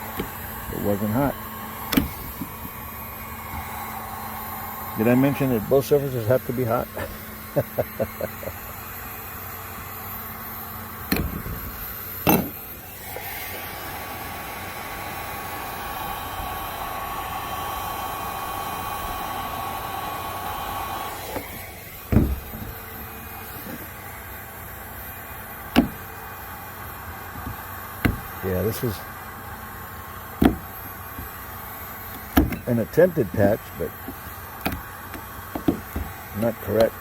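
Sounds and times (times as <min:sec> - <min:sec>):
heat gun blowing: 0:00.0 - 0:37.0
tools knocking on plastic: 0:27.4 - 0:28.4, 0:30.4 - 0:30.7, 0:35.5 - 0:36.2.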